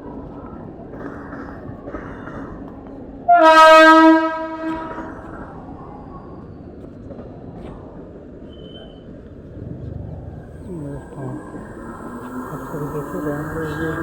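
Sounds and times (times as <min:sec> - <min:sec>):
busy railway platform noise: 0:00.0 - 0:14.0
train horn blast: 0:03.3 - 0:05.2.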